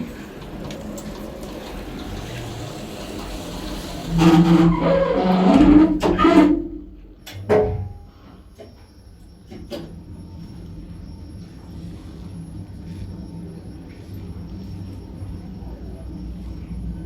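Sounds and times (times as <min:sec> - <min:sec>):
lift car humming: 0:00.0 - 0:07.1.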